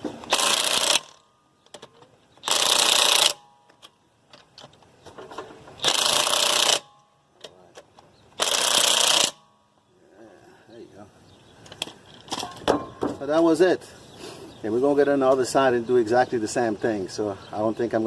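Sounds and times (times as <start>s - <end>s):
impact wrench hammering lug nuts: 0.0s - 1.2s, 2.4s - 3.8s, 5.8s - 7.1s, 8.4s - 9.6s.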